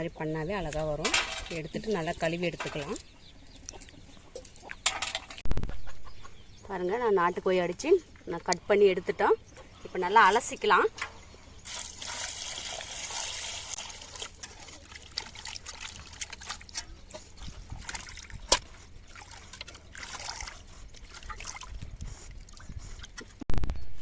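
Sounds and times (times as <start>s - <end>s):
water splashing while rinsing: 11.7s - 16.8s, 17.7s - 21.8s.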